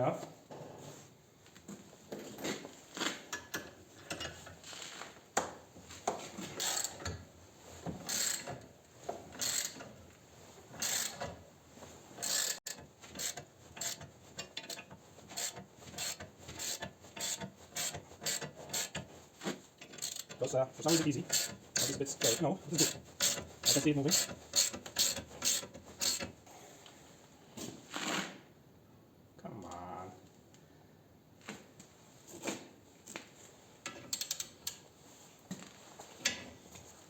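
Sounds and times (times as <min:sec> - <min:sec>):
wrench turning bolt scraping metal: 0:06.6 - 0:07.2, 0:08.0 - 0:08.6, 0:09.3 - 0:09.9, 0:10.8 - 0:11.4, 0:12.2 - 0:19.1, 0:19.8 - 0:26.3.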